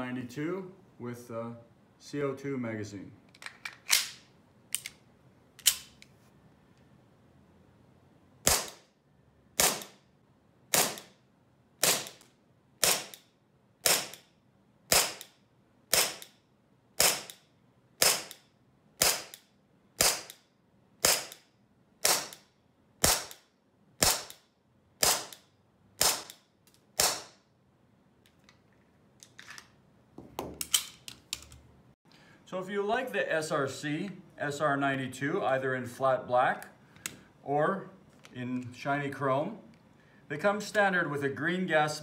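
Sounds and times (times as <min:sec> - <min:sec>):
pistol slide cycling: 0:03.4 - 0:05.0, 0:05.6 - 0:06.2
airsoft pistol shots: 0:08.4 - 0:08.9, 0:09.6 - 0:10.0, 0:10.7 - 0:11.2, 0:11.8 - 0:12.2, 0:12.8 - 0:13.2, 0:13.8 - 0:14.2, 0:14.9 - 0:15.3, 0:15.9 - 0:16.3, 0:17.0 - 0:17.4, 0:18.0 - 0:18.4, 0:19.0 - 0:19.4, 0:20.0 - 0:20.4, 0:21.0 - 0:21.4, 0:22.0 - 0:22.4, 0:23.0 - 0:23.4, 0:24.0 - 0:24.4, 0:25.0 - 0:25.4, 0:26.0 - 0:26.4, 0:27.0 - 0:27.4.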